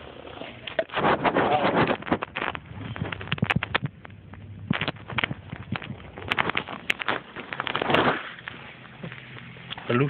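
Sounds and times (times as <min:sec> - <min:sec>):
clicks and knocks of handling: 0:01.8 - 0:09.9.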